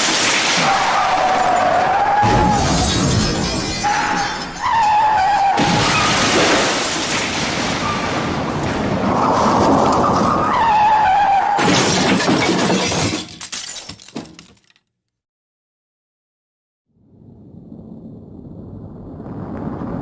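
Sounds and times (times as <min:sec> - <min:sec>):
car crash impact: 0:00.0 - 0:04.8
glass shattering: 0:00.0 - 0:07.4, 0:11.6 - 0:14.8.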